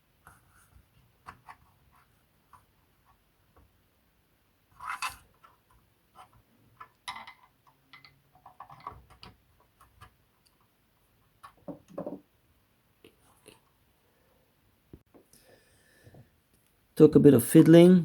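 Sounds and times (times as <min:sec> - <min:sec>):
clicks and scrapes of handling: 0:04.7 - 0:10.7.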